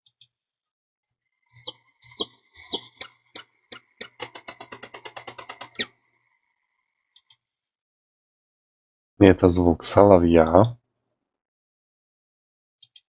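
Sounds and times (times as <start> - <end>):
nightingale singing: 1.4 - 6.0.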